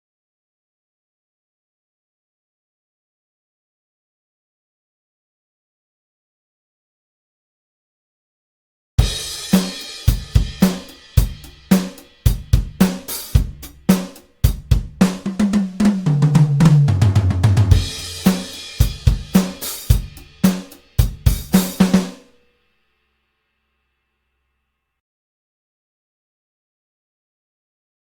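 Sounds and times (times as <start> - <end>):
drum fill stepping down in pitch: 9.0 - 22.3
drum kit groove: 9.0 - 22.4.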